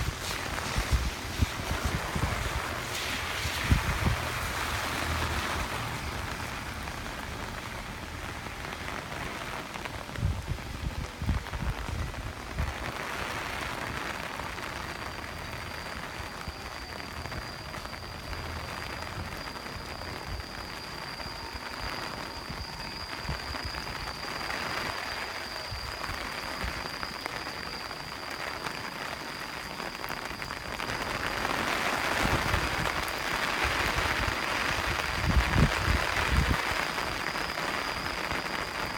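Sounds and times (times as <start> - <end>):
wind gusts buffeting microphone: 0.0 - 5.8, 33.7 - 36.7
heavy rain pouring: 0.0 - 38.9
faint steady high tone: 13.9 - 38.9.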